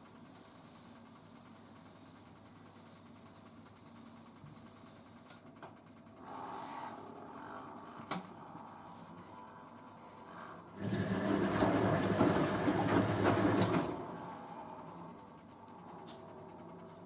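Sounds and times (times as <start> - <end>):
motor hum: 0.0 - 17.0
washing machine drum tumbling: 10.8 - 14.1.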